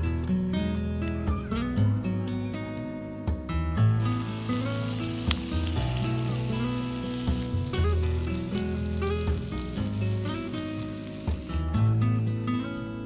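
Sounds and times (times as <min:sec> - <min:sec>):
background music: 0:00.0 - 0:13.0
food sizzling in a pan: 0:04.0 - 0:13.0.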